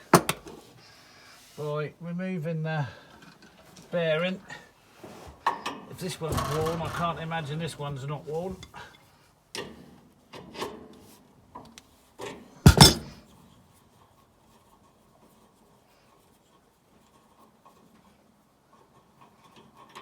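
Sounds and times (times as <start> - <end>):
sharp metallic knock: 12.7 - 13.1
hand tools clinking on metal: 12.7 - 13.2.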